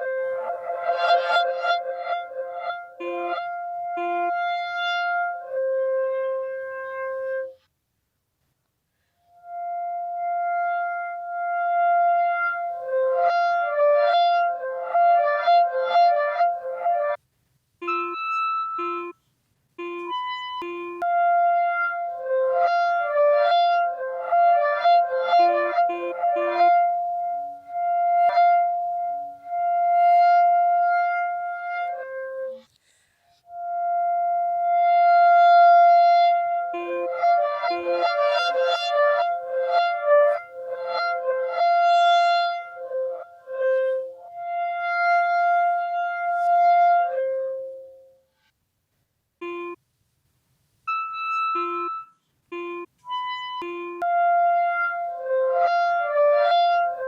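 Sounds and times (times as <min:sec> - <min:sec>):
clarinet playing long notes: 0:00.0 - 0:07.7, 0:09.2 - 0:17.2, 0:17.8 - 0:48.4, 0:49.4 - 0:49.8, 0:50.9 - 0:57.0.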